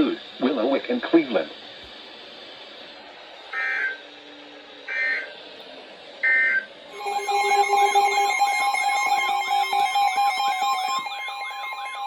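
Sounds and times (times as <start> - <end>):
harsh data tone bursts: 6.9 - 12.0
loud steady alert tone: 6.9 - 12.0.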